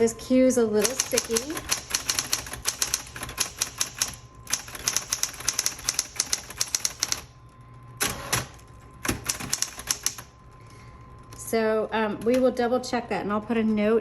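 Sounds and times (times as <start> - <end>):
electric typewriter keystrokes: 0.8 - 10.6
typewriter motor hum: 0.8 - 11.4.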